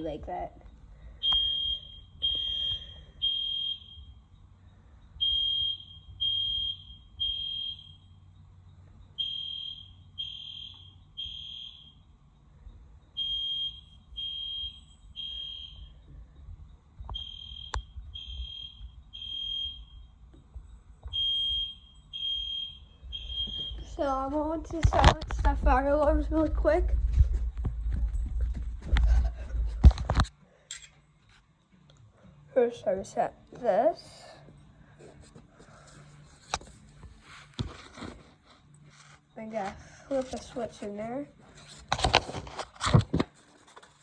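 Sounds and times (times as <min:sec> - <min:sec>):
fire alarm horn beeping: 0:01.2 - 0:04.4, 0:05.1 - 0:08.4, 0:09.2 - 0:12.2, 0:13.2 - 0:16.1, 0:17.1 - 0:20.2, 0:21.1 - 0:24.1.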